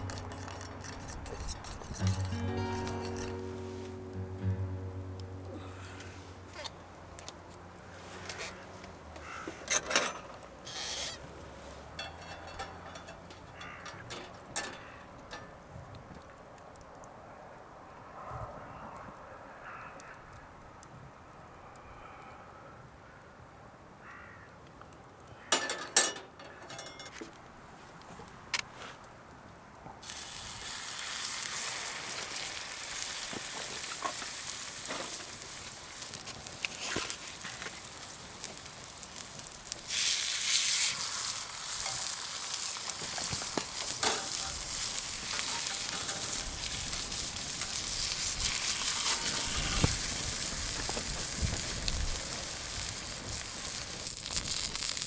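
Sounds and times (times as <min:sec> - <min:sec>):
meat sizzling on a griddle: 0:30.0 - 0:55.0.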